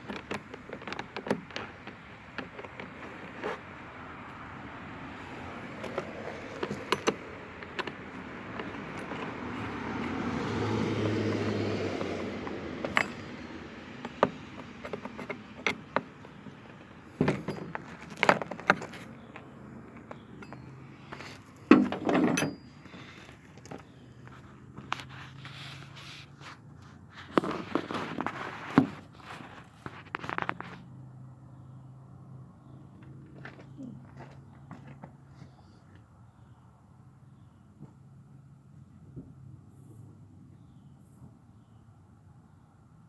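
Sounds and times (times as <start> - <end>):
scraping clatter: 0.0 - 3.7, 5.6 - 26.4
metal parts and tools clinking: 5.8 - 9.8, 12.0 - 19.3, 20.0 - 23.8.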